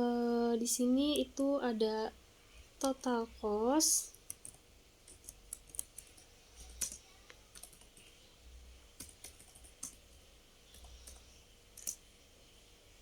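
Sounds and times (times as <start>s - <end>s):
computer keyboard keystrokes: 4.1s - 8.1s, 9.0s - 12.0s.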